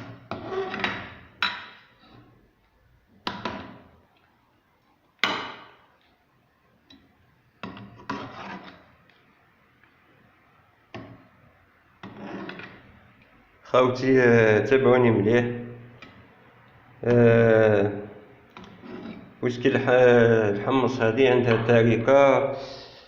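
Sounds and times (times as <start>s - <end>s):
cookware knocking and clattering: 0.0s - 1.8s.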